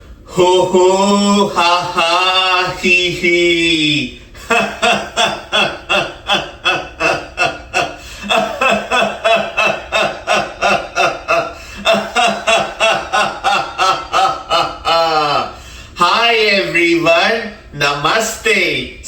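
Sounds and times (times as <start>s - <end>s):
rhythmic laughter: 4.1s - 15.9s.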